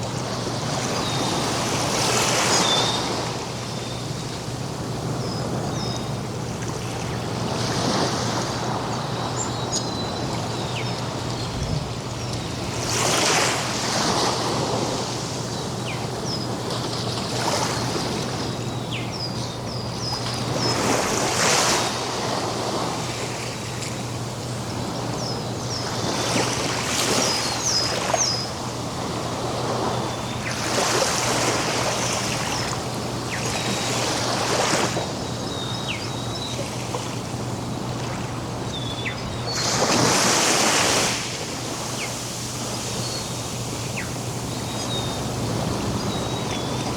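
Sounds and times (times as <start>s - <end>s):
ocean waves breaking: 4.4s - 18.5s, 25.8s - 46.9s.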